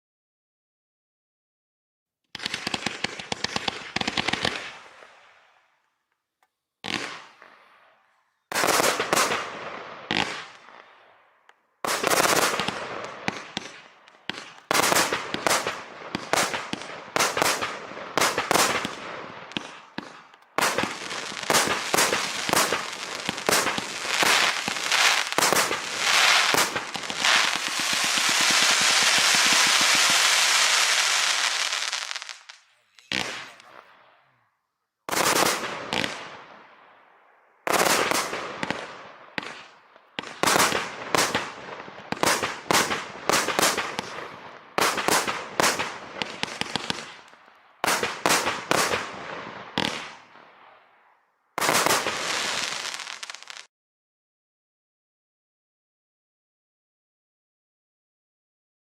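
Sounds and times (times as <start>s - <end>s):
fireworks shots firing: 2.4s - 5.4s, 6.8s - 7.8s, 8.5s - 11.1s, 11.8s - 34.3s, 35.1s - 37.0s, 37.6s - 50.8s, 51.6s - 53.7s.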